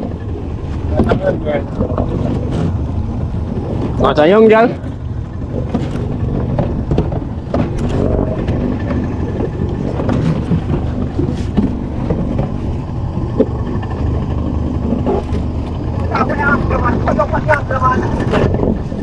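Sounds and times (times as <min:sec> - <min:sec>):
boat motor rumbling: 0:00.0 - 0:19.0
knocks and clatter on board: 0:00.0 - 0:19.0.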